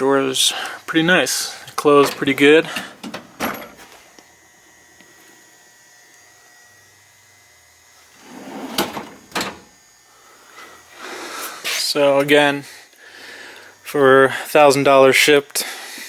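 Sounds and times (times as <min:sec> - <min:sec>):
metal drawer sliding: 0:08.2 - 0:09.6
drawer shutting with knocks: 0:08.4 - 0:09.6.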